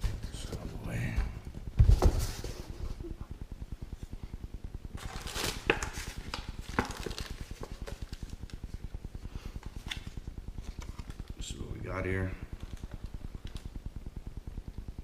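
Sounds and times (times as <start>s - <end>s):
low pulsing hum: 0.0s - 15.0s
packaging rustling: 5.0s - 8.8s.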